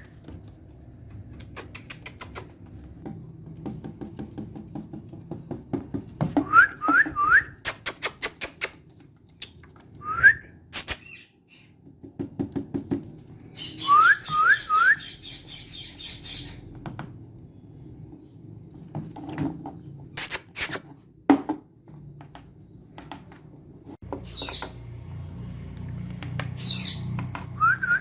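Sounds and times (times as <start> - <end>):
sharp clicks: 1.4 - 2.6
parakeet whistling: 13.6 - 16.6, 27.6 - 28.0.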